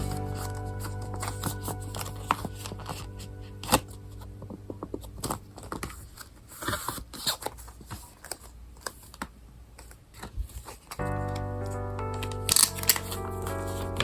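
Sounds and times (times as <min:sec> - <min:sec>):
background music: 0:00.0 - 0:05.9, 0:11.0 - 0:14.0.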